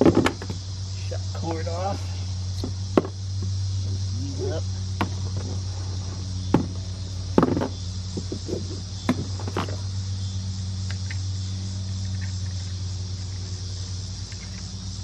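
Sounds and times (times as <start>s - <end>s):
kayak parts knocking: 0.0s - 0.6s, 2.6s - 4.1s, 4.9s - 9.9s
kayak parts rattling: 0.0s - 0.7s, 2.5s - 10.0s
insect buzz: 0.0s - 15.0s
steady low hum: 0.0s - 15.0s.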